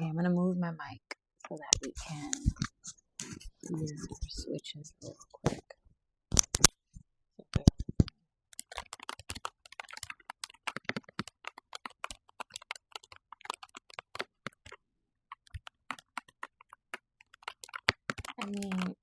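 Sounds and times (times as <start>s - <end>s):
mechanical keyboard key clicks: 6.4s - 6.7s.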